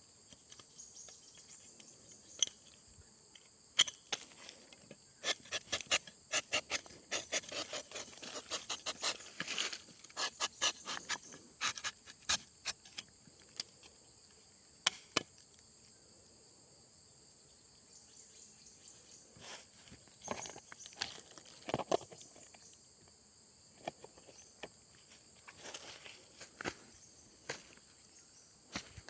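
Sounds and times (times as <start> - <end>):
insects droning: 0.0 - 29.0
knife rasping on bark: 5.2 - 9.4, 10.1 - 12.9.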